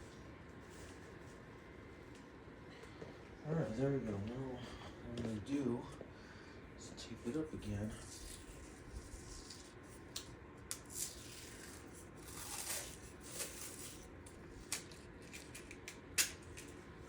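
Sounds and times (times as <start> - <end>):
tape being pulled and torn: 8.0 - 16.7.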